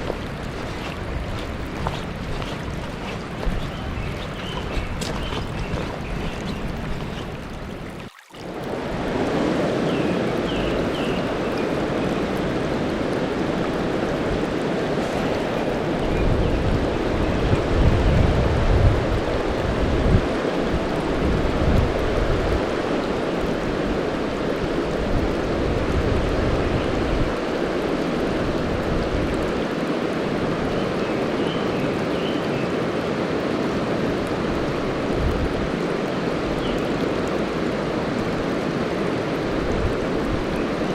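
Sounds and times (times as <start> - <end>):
river rushing over rocks: 0.0 - 9.4.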